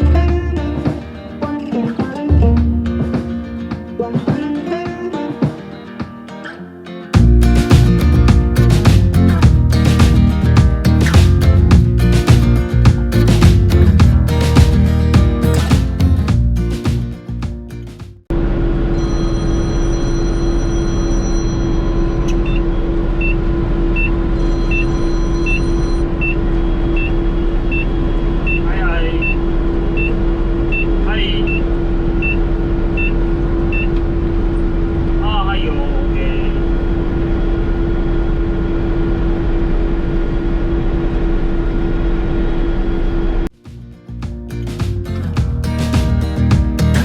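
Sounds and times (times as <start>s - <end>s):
short high electronic beep: 18.9s - 23.4s, 24.0s - 29.4s.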